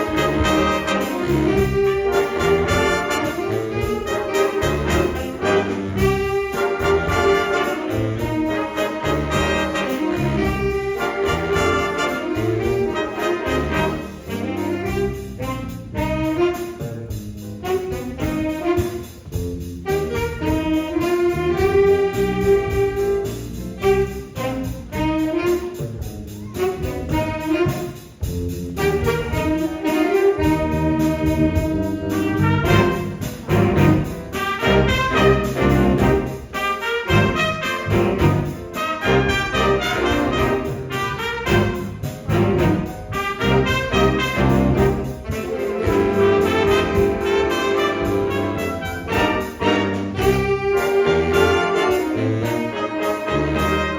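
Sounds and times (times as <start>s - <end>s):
big band jazz playing: 0.0s - 53.9s.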